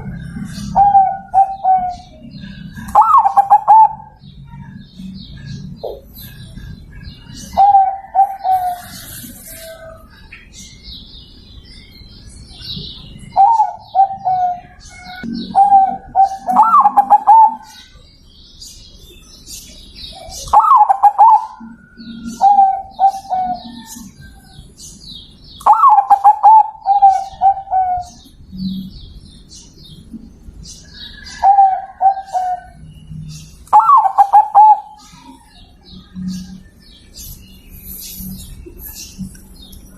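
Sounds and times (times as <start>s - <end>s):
dove cooing: 0.0s - 10.0s, 13.0s - 17.7s, 20.4s - 24.4s, 25.6s - 28.3s, 31.0s - 36.6s.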